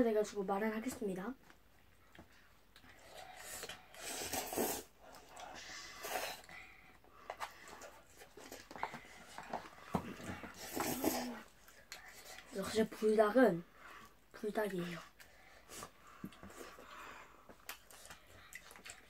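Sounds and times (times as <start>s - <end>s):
child breathing while eating: 2.8s - 12.5s, 15.1s - 18.9s.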